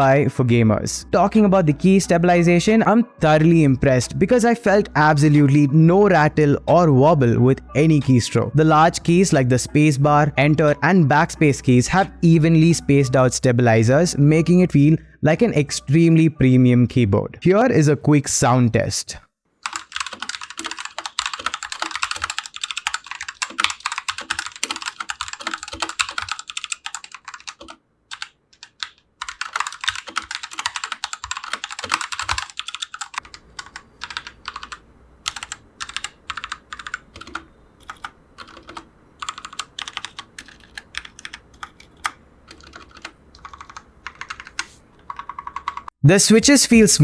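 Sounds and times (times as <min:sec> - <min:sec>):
mechanical keyboard typing: 0:19.6 - 0:45.9.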